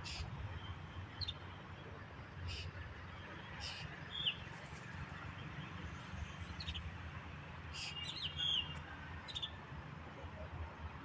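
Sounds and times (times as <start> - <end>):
birds chirping: 1.1 - 1.6, 7.8 - 9.6.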